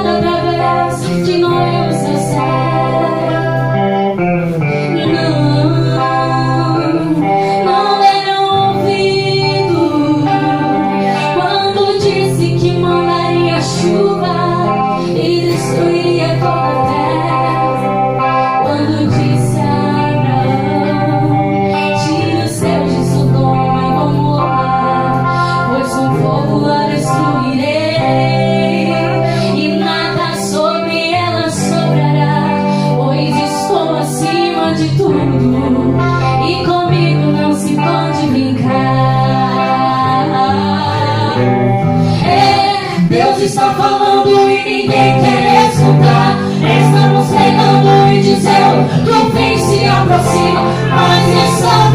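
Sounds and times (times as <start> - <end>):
guitar accompaniment: 0.0 - 51.9
person singing: 0.0 - 51.9
steady bass: 34.7 - 51.9.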